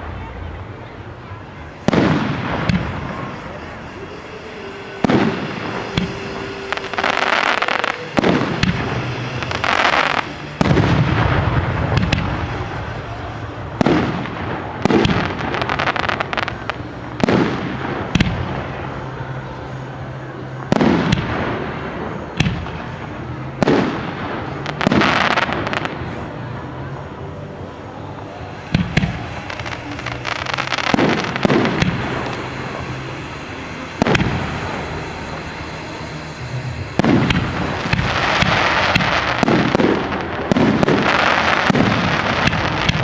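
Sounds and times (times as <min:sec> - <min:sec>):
crackling hiss of fireworks: 0:00.0 - 0:43.0
firework shell bursts: 0:01.9 - 0:13.0.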